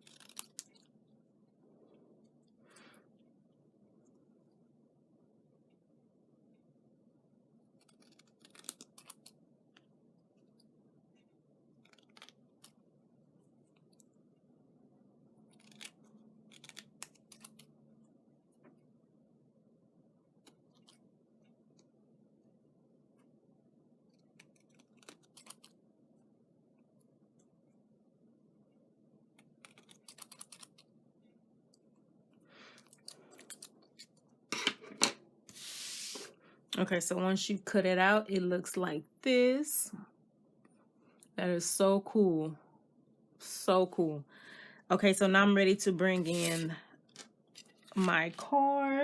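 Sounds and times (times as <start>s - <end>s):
scissors snipping paper: 0.0s - 0.8s, 7.8s - 9.4s, 15.5s - 17.7s, 24.3s - 25.8s, 29.4s - 30.8s, 46.2s - 48.5s
paper rustling: 46.2s - 48.6s.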